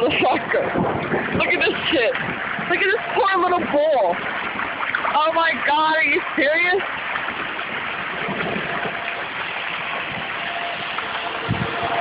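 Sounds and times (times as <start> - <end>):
heavy rain: 0.0 - 12.0
running floodwater: 0.0 - 12.0
distant tornado siren: 7.0 - 12.0.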